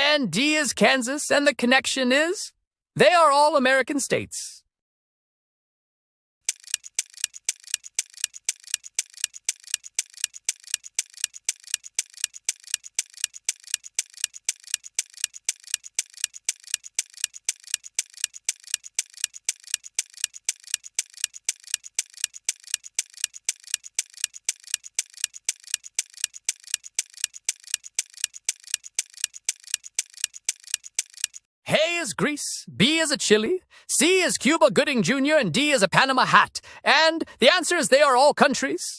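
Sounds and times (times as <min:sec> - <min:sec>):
clock ticking: 0:06.5 - 0:31.5.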